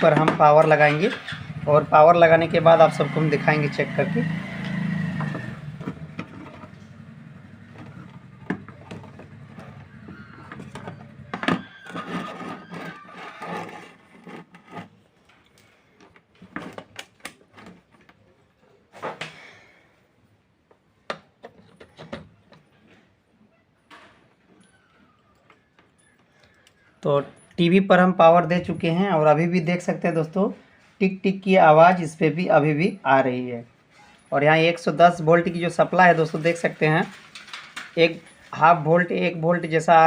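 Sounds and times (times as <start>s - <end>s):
clicks and knocks of handling: 37.1s - 38.0s.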